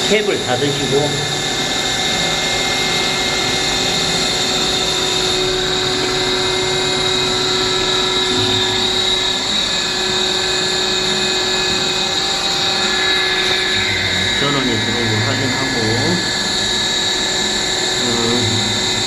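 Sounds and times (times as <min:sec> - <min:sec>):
pump motor humming: 0:00.0 - 0:19.0.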